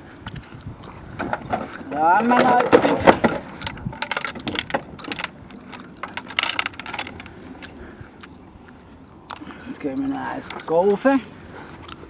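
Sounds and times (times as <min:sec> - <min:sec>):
small hard objects clicking: 0:02.2 - 0:08.3.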